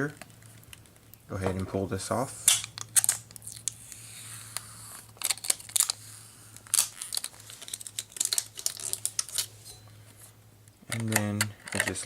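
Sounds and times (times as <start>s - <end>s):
low steady hum: 0.0s - 12.0s
packaging clicks and crinkles: 2.5s - 3.8s, 4.5s - 9.7s.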